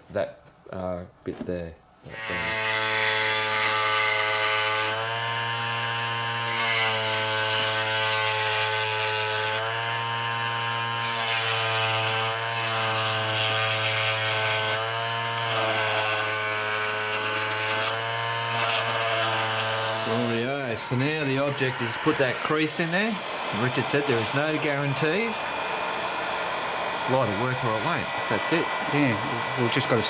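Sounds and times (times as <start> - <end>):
rotary tool cutting plastic: 2.2 - 30.0.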